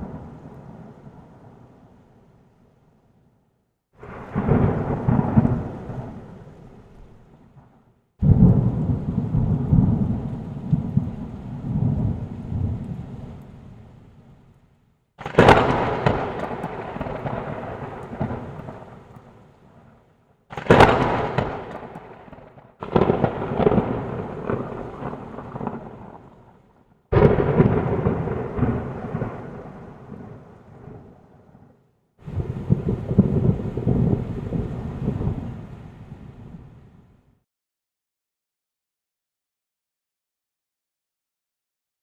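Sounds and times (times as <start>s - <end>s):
thunderclaps rumbling: 0.0s - 1.8s, 4.0s - 13.8s, 15.2s - 36.8s.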